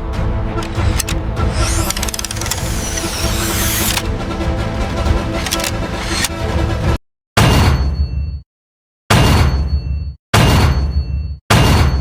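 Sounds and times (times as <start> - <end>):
sharp clicks: 0.6 - 4.1, 5.4 - 6.4.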